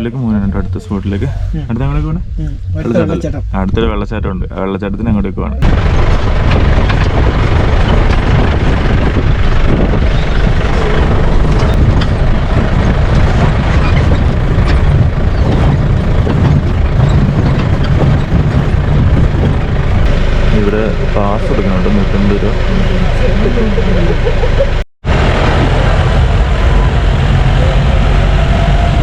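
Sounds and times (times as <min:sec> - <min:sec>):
jeep engine and road rumble: 0:00.0 - 0:29.0
small knocks and rattles: 0:13.0 - 0:19.7.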